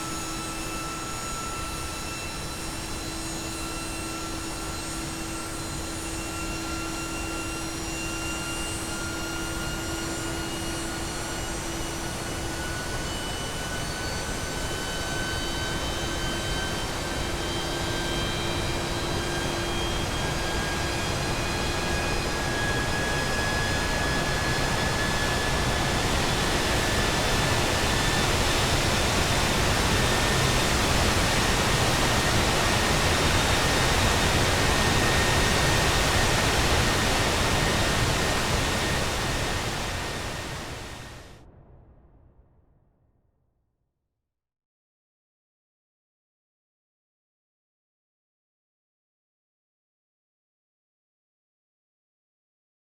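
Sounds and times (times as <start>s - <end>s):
jet engine whine rising: 0.0s - 42.0s
jet engine rushing noise: 22.7s - 41.4s.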